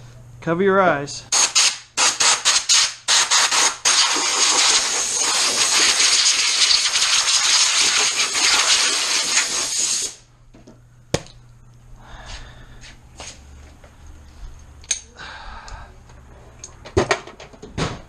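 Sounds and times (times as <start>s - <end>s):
compressed air blow gun hissing: 2.6s - 10.2s.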